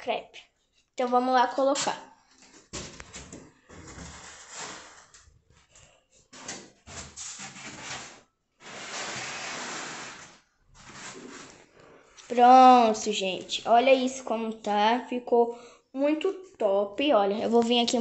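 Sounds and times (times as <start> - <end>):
masking tape pulled off roll: 6.5 - 11.6.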